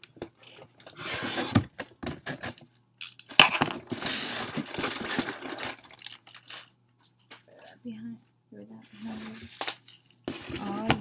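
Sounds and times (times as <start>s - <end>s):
packaging rustling and scraping: 0.4s - 2.7s, 3.3s - 6.8s, 8.9s - 11.0s.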